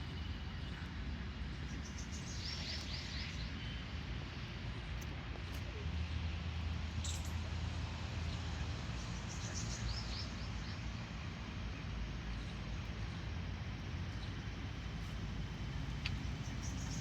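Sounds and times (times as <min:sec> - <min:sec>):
low background rumble: 0:12.3 - 0:17.0.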